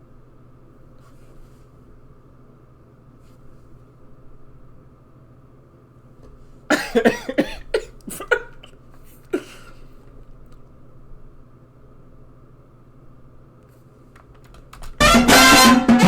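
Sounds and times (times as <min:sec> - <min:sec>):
man coughing: 0:06.7 - 0:10.0.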